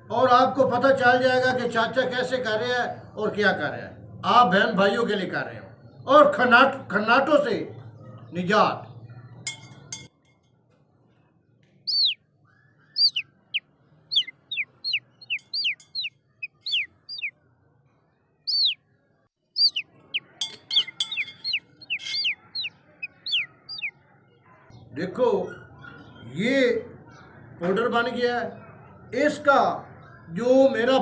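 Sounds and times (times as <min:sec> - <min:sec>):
small bird chirping: 0:11.7 - 0:24.9.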